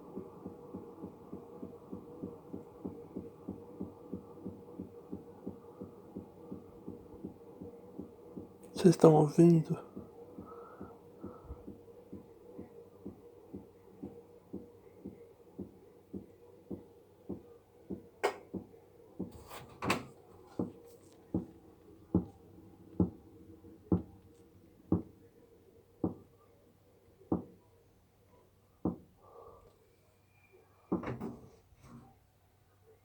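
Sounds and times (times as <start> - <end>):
washing machine knocking: 0.0 - 24.2, 24.9 - 25.2, 26.0 - 26.3, 27.3 - 27.6, 30.9 - 31.5
faint steady hum: 0.0 - 33.0.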